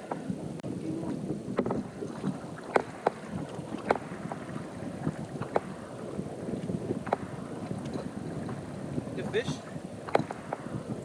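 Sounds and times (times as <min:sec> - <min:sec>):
water lapping against boat hull: 0:00.0 - 0:11.0
sharp slaps on hull: 0:01.5 - 0:05.8, 0:07.0 - 0:08.6, 0:09.4 - 0:10.8.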